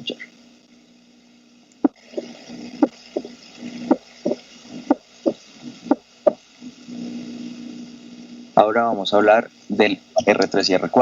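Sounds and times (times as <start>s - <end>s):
steady low hum: 0.0s - 11.0s
heartbeat through stethoscope: 1.9s - 6.4s.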